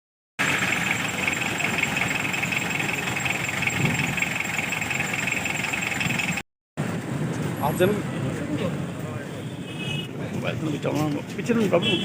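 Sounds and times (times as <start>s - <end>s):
engine idling: 0.4s - 6.4s.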